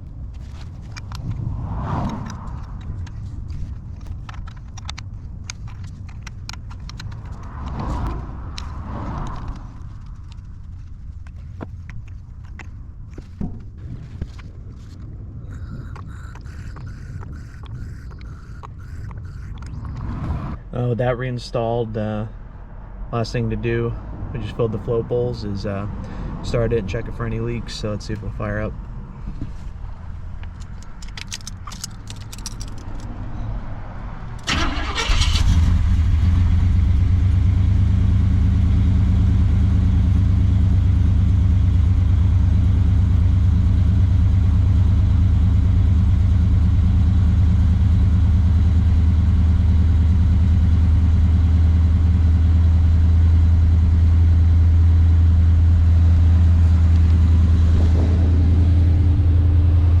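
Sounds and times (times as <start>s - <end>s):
car engine cranking: 29.4s - 33.2s, 34.3s - 38.2s
car engine idling: 34.4s - 60.0s.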